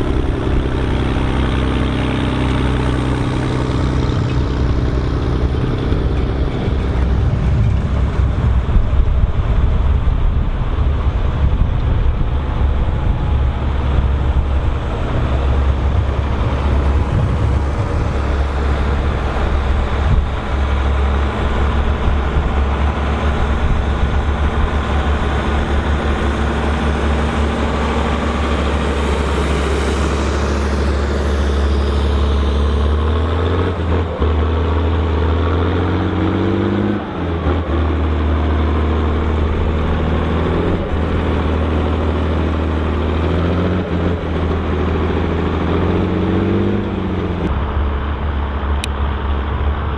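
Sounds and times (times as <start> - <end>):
tractor diesel engine droning: 0.0 - 49.9.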